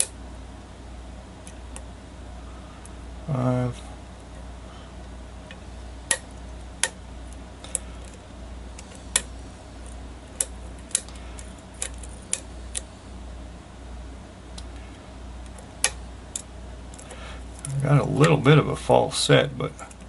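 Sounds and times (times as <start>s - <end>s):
steady low hum: 0.0s - 20.0s
lock pick metallic clicks: 10.4s - 12.9s.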